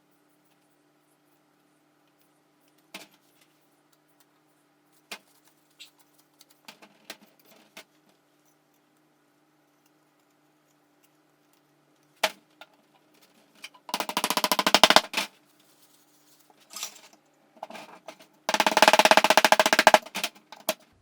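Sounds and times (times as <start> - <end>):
faint steady hum: 0.0 - 21.0
small parts clicking and tapping: 9.8 - 15.6, 16.4 - 21.0.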